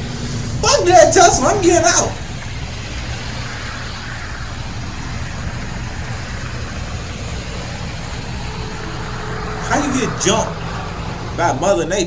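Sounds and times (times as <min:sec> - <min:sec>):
windstorm roaring against a car: 0:00.0 - 0:12.0.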